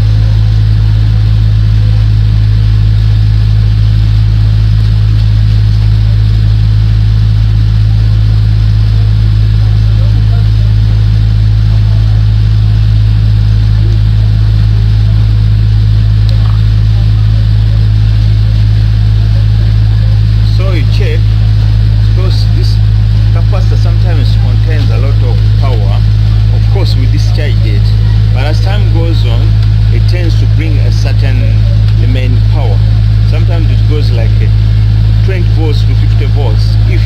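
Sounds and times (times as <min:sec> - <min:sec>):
loud low hum: 0:00.0 - 0:37.0.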